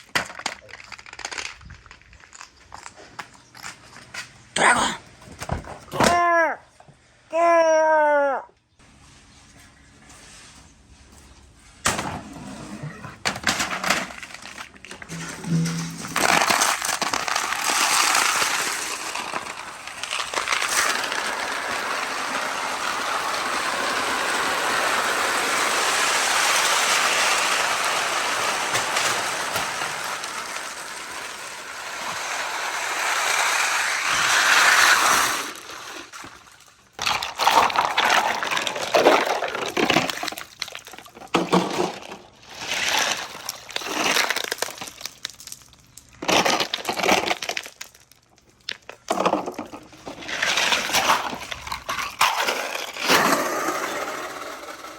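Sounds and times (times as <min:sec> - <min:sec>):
glass marbles clattering on wood: 0:00.0 - 0:04.1.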